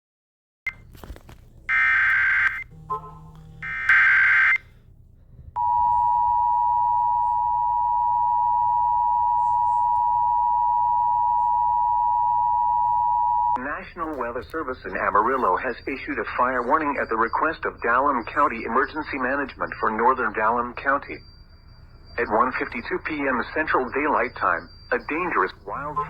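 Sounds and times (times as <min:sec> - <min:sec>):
two-tone attention signal: 0:01.7 - 0:04.6, 0:05.6 - 0:26.0
warbling digital data bursts: 0:14.8 - 0:26.0.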